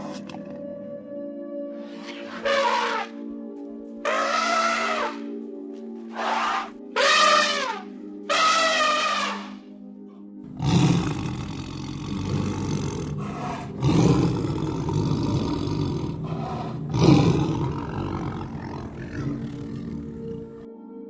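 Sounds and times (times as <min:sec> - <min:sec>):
large animal's deep rough call: 0:02.0 - 0:03.2, 0:04.1 - 0:05.3, 0:06.1 - 0:09.6, 0:10.6 - 0:20.6.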